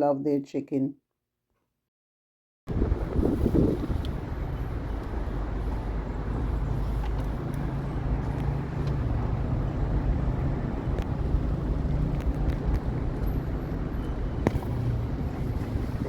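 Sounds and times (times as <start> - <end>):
car engine and road rumble: 2.7 - 16.0.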